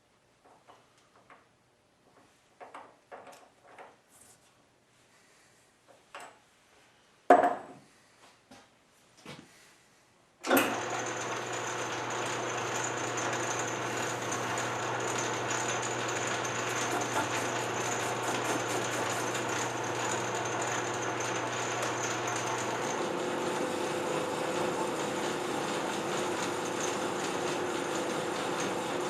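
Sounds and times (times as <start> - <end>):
electric shop machine running: 10.4 - 29.0.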